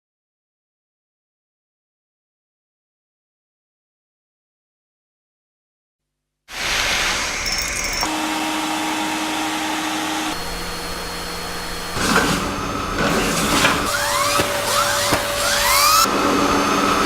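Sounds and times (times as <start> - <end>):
vacuum cleaner motor whining: 6.5 - 17.0.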